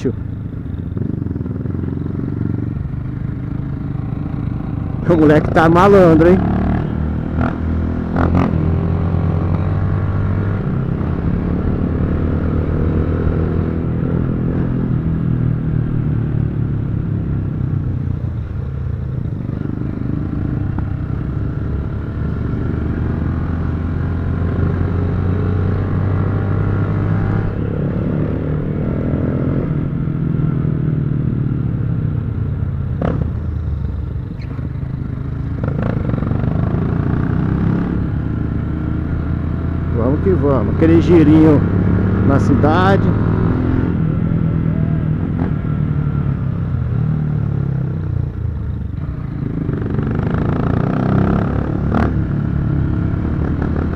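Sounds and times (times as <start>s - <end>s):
motorcycle engine running: 0.2s - 23.8s.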